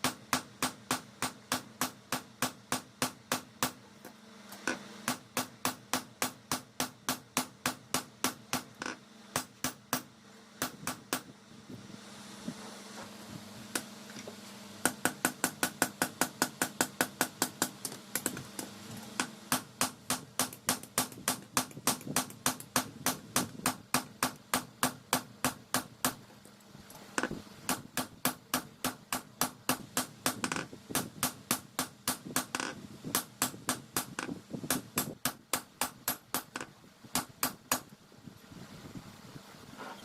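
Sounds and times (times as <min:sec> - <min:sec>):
hammer striking hot steel on anvil: 0:00.0 - 0:03.8, 0:04.7 - 0:11.3, 0:14.8 - 0:26.2.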